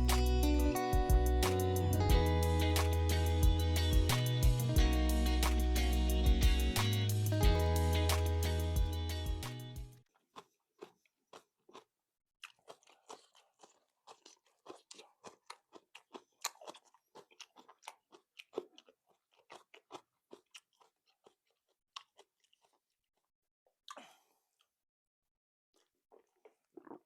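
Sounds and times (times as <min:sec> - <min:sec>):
crunching and chewing cucumber: 0:10.1 - 0:24.0, 0:25.7 - 0:27.0.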